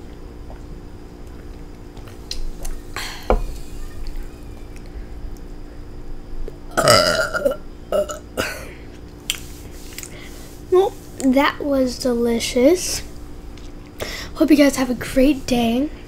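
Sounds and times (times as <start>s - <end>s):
child burping: 6.7s - 8.7s.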